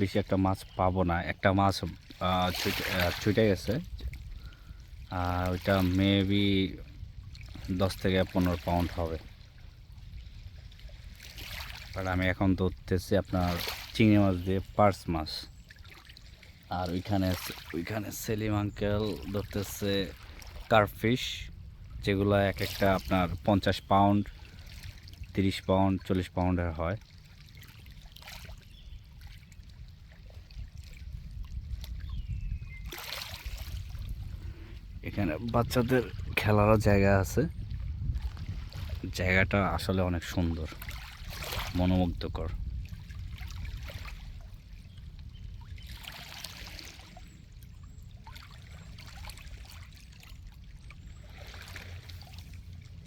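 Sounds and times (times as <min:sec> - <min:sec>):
faint trickling water: 0:00.0 - 0:53.0
low uneven rumble: 0:33.5 - 0:53.0.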